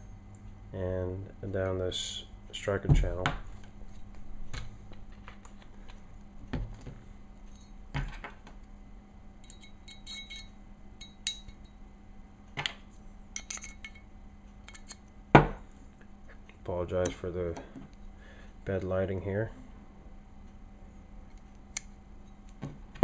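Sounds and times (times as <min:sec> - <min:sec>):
metal parts clicking and clinking: 0:13.4 - 0:14.0.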